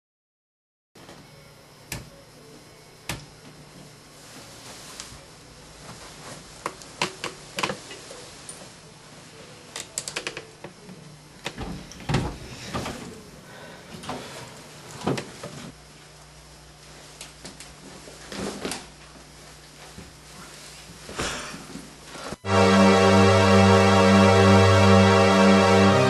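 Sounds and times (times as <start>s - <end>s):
steady low hum: 19.0s - 26.0s.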